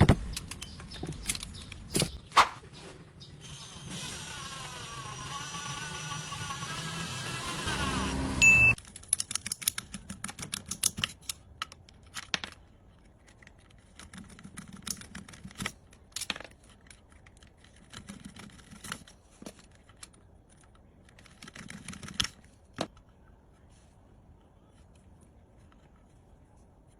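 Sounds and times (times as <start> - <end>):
motor running: 3.4 - 8.8.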